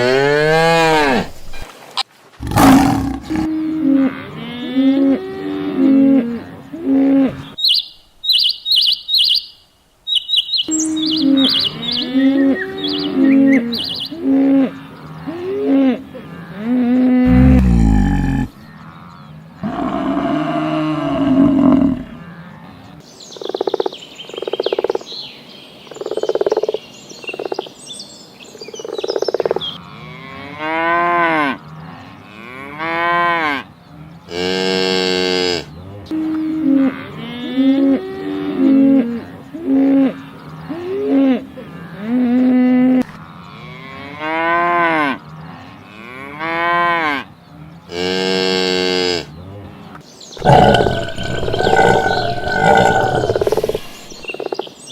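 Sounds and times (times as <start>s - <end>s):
cattle mooing: 0.0s - 1.6s, 2.4s - 3.6s, 17.2s - 18.6s, 50.4s - 54.2s.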